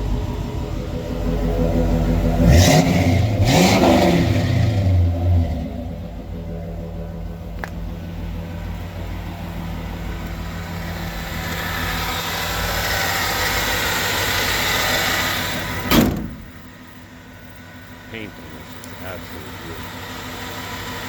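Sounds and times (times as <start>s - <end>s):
engine idling: 0.0s - 21.0s
loud thump: 15.8s - 16.6s.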